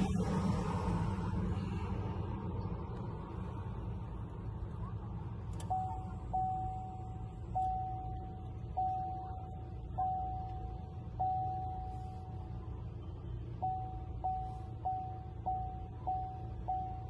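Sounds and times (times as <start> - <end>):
steady low hum: 0.0 - 17.0
car warning chime dinging: 5.6 - 12.6, 13.5 - 17.0.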